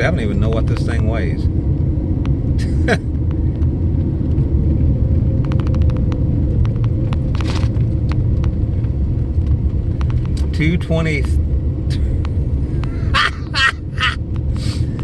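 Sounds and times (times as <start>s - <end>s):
vehicle engine and tyres rumbling: 0.0s - 15.0s
light clicks and ticks: 5.4s - 11.4s.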